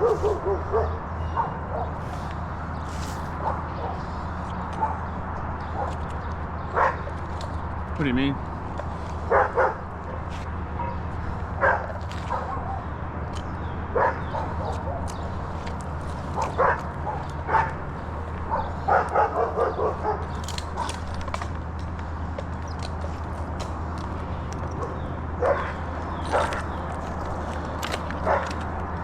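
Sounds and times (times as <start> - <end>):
dog barking: 0.0 - 2.3, 3.3 - 7.2, 9.2 - 12.9, 13.9 - 15.2, 16.2 - 21.1, 24.7 - 27.2, 27.8 - 29.0.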